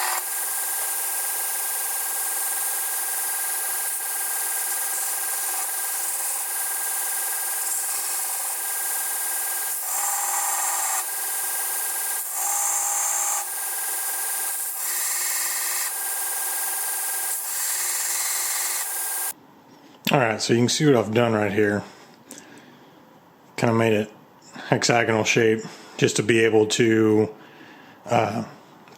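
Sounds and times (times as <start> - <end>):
tool grinding steel: 0.0 - 19.3.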